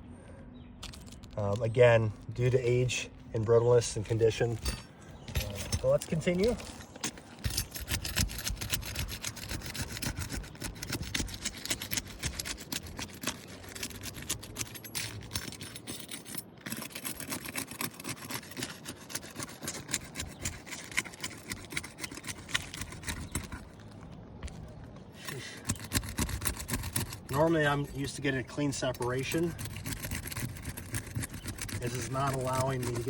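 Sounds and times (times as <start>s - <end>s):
tool scraping shingles: 0.8s - 33.0s.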